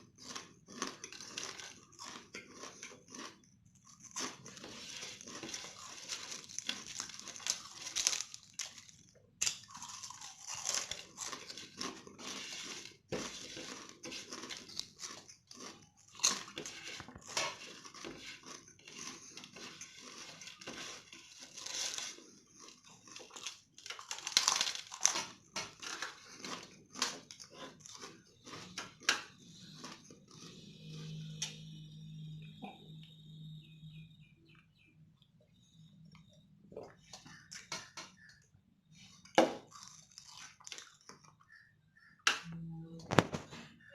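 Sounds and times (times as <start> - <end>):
chewing potato chips: 0.0 - 32.3, 39.0 - 41.6.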